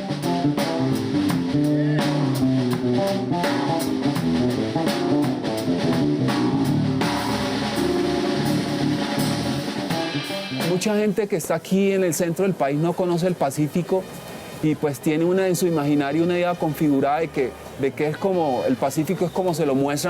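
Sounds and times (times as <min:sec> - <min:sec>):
jazz band music: 0:00.0 - 0:11.0
drum kit beat: 0:00.0 - 0:11.3.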